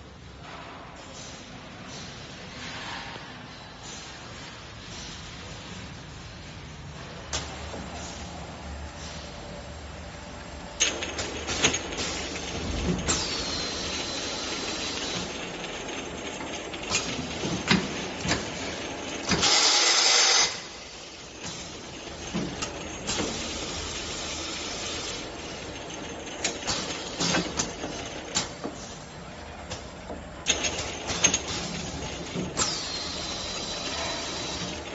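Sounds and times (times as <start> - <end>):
bottle washing machine running: 7.7 - 34.9
machine clanks and knocks: 10.8 - 19.8, 21.4 - 32.8.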